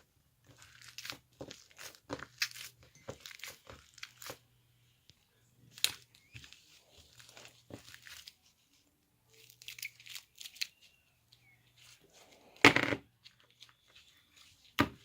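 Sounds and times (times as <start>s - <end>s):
rustling crinkling handling noises: 0.0s - 15.0s.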